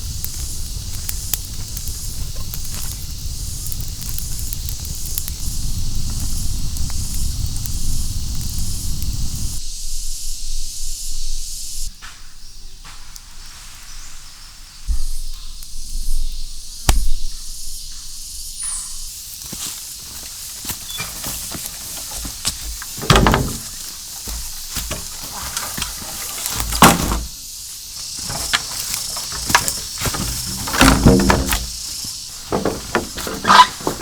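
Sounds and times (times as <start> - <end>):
insects chirring: 0.0 - 34.0
sharp knocks and thuds: 16.8 - 17.4, 21.0 - 27.4, 28.2 - 34.0.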